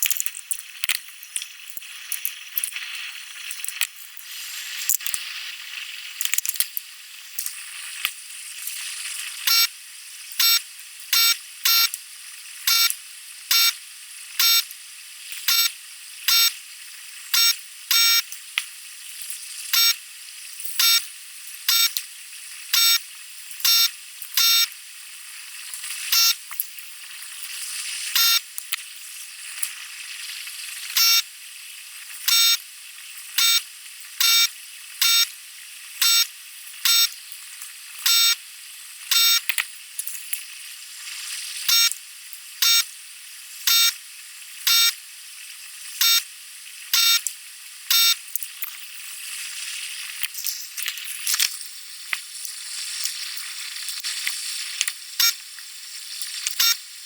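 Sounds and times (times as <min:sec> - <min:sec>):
crackling hiss: 0:00.0 - 0:57.0
short electronic beeps: 0:09.5 - 0:09.7, 0:10.4 - 0:10.6, 0:11.2 - 0:11.9, 0:12.7 - 0:12.9, 0:13.5 - 0:13.8, 0:14.4 - 0:14.7, 0:15.5 - 0:15.7, 0:16.3 - 0:16.5, 0:17.4 - 0:18.2, 0:20.8 - 0:21.0, 0:21.7 - 0:22.0, 0:22.8 - 0:23.0, 0:23.7 - 0:24.7, 0:26.1 - 0:26.4, 0:28.2 - 0:28.4, 0:31.0 - 0:31.2, 0:32.3 - 0:32.6, 0:33.4 - 0:33.6, 0:34.2 - 0:35.3, 0:36.0 - 0:36.3, 0:36.9 - 0:37.2, 0:38.1 - 0:38.4, 0:39.1 - 0:39.4, 0:41.7 - 0:41.9, 0:42.6 - 0:42.9, 0:43.7 - 0:44.0, 0:44.7 - 0:45.0, 0:46.0 - 0:46.2, 0:47.0 - 0:47.3, 0:47.9 - 0:48.2, 0:56.6 - 0:56.8.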